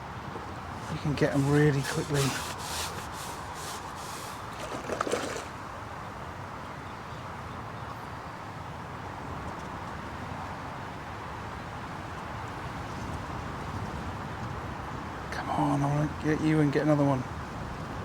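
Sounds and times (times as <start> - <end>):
outdoor background noise: 0.0 - 18.0
scraping rustle: 0.7 - 5.6.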